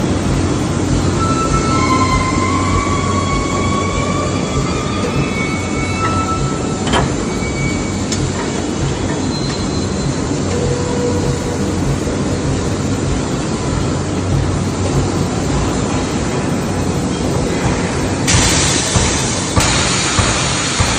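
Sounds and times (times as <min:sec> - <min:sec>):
industrial machinery din: 0:00.0 - 0:20.9
high-pitched squeals: 0:01.1 - 0:08.5.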